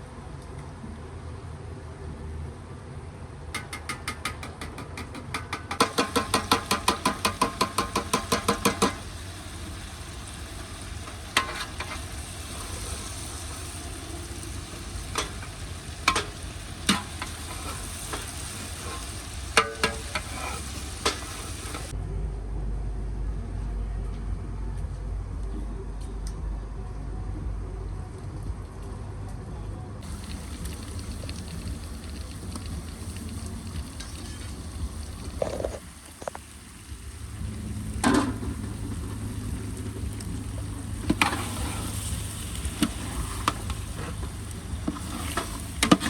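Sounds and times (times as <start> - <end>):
food sizzling in a pot: 5.7 - 22.0, 30.0 - 46.0.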